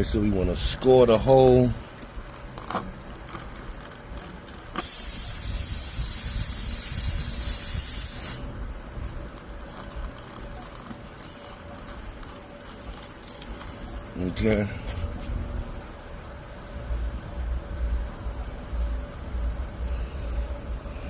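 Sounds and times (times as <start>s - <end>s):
air hissing out of tire: 4.7s - 8.5s.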